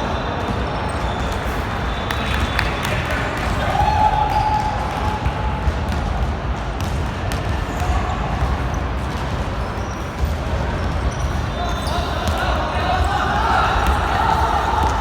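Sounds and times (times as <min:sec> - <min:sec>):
basketball bouncing on court: 0:00.0 - 0:15.0
voices: 0:11.2 - 0:15.0.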